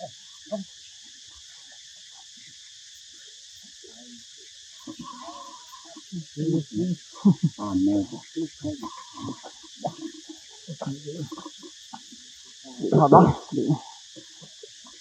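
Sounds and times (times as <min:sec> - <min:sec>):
crickets chirping: 0:00.0 - 0:15.0
low-pitched vocal sounds: 0:06.1 - 0:10.1, 0:12.7 - 0:13.9.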